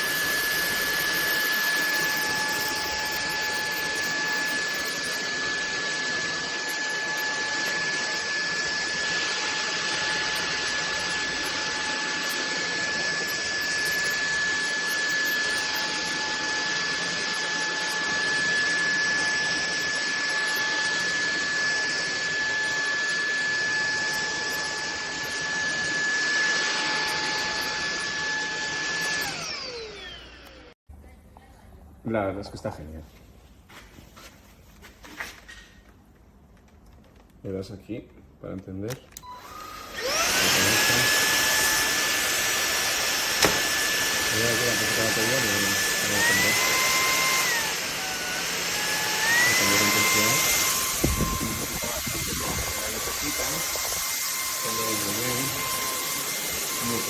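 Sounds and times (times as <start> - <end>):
vacuum motor whine: 0.0 - 30.8, 39.1 - 57.0
vacuum airflow hiss: 39.8 - 46.7, 48.9 - 57.0.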